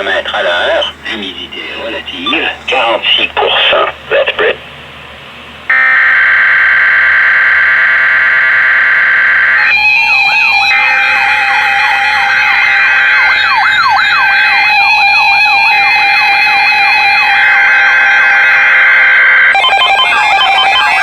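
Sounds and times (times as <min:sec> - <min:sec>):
siren-like sweeping tones: 0:05.7 - 0:21.0
steady tone: 0:05.7 - 0:21.0.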